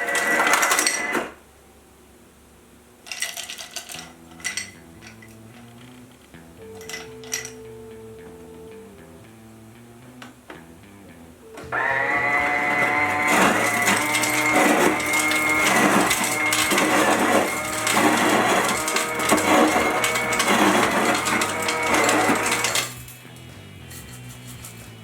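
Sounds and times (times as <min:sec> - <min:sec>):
ice dispenser motor whine: 0:00.0 - 0:01.5, 0:03.5 - 0:09.0, 0:11.4 - 0:23.5
ice clattering out: 0:12.4 - 0:23.1.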